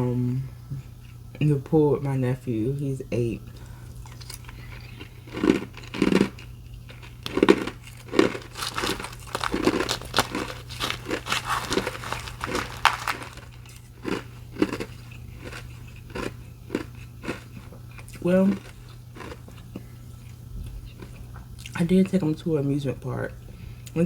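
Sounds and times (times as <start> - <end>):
ice being chewed: 3.8 - 21.8.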